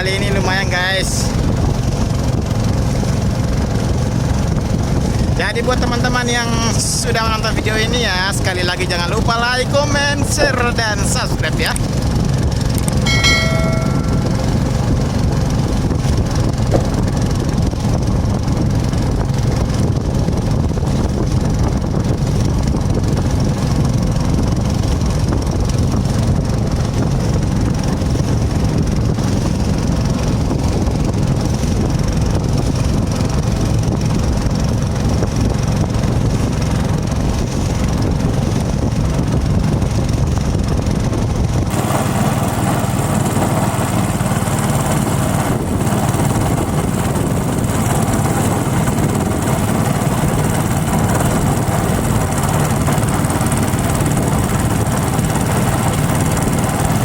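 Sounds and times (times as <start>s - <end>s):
small engine running: 41.6s - 57.0s.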